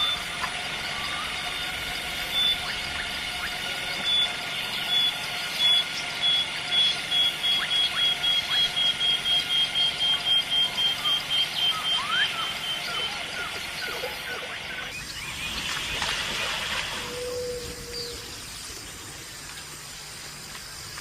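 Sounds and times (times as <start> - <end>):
repeated high beep-like animal call: 0.0 - 15.4
high insect drone: 0.0 - 21.0.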